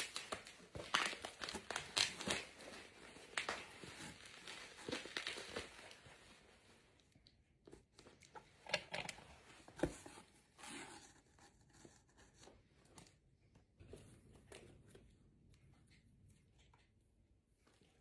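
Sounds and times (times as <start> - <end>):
packaging rustling: 0.0 - 6.4.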